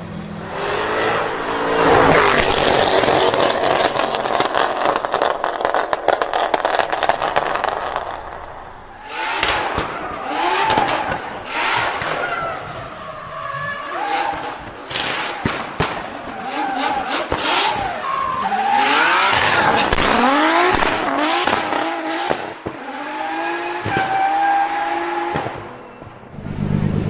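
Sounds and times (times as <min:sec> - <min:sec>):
car engine revving: 0:00.4 - 0:12.2, 0:16.4 - 0:25.6, 0:26.3 - 0:27.0
exhaust crackles and pops: 0:02.0 - 0:12.4, 0:14.3 - 0:16.1, 0:18.8 - 0:22.8.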